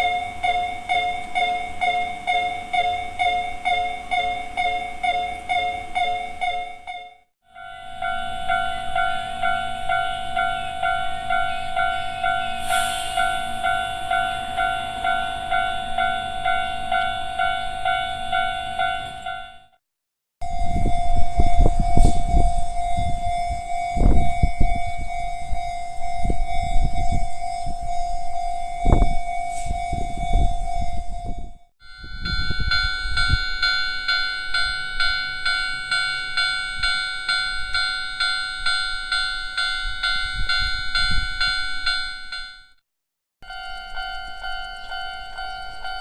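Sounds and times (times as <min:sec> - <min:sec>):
level crossing warning bell: 0:00.0 - 0:19.8, 0:20.4 - 0:42.8, 0:43.4 - 0:46.0.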